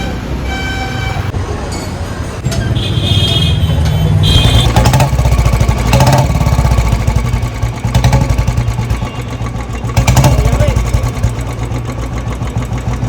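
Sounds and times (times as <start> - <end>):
horn beep: 0.0 - 1.3, 2.5 - 5.1, 8.0 - 10.3
motorcycle engine thumping: 2.4 - 13.0.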